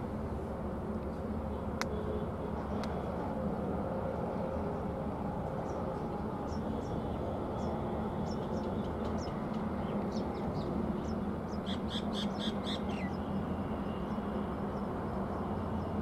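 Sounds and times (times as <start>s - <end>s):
train rumbling past: 0.0s - 16.0s.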